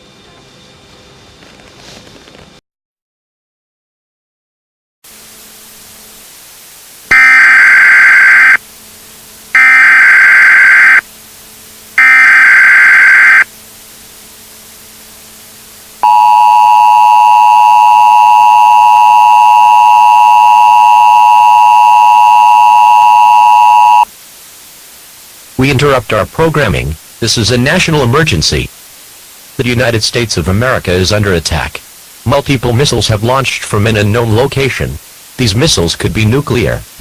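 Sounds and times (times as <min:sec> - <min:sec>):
digital header bursts: 0:07.1 - 0:08.6, 0:09.6 - 0:11.0, 0:12.0 - 0:13.4
two-tone attention signal: 0:07.1 - 0:08.6, 0:09.6 - 0:11.0, 0:12.0 - 0:13.4, 0:16.0 - 0:24.0.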